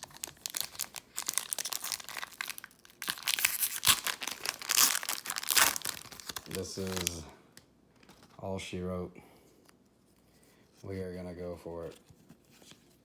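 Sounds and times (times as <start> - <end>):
foil wrapper tearing and crinkling: 0.0 - 7.2.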